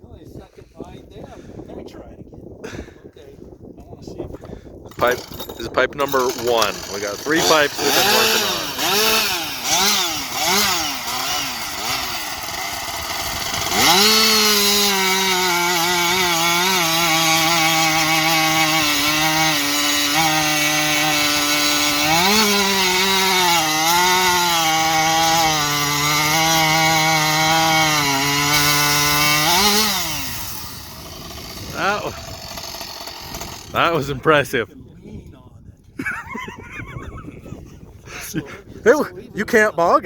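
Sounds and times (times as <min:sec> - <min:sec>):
chainsaw revving and cutting wood: 0:04.9 - 0:34.3.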